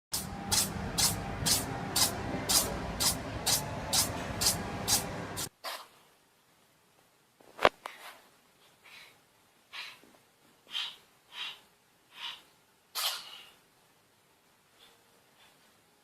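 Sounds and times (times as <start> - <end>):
cat sneezing: 12.9 - 13.5.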